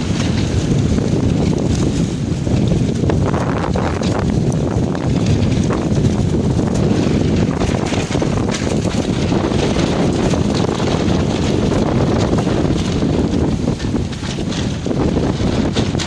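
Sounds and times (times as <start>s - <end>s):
boat water and rigging noise: 0.0s - 16.0s
wind buffeting microphone: 0.0s - 16.0s.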